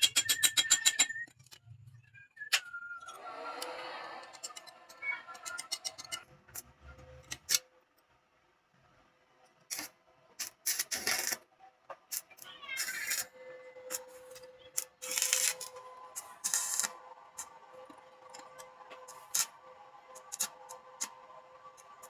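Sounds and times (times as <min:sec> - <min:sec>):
welding sparks crackling: 0:09.7 - 0:11.4, 0:12.8 - 0:13.3, 0:14.8 - 0:17.0, 0:19.1 - 0:19.5, 0:20.2 - 0:21.1.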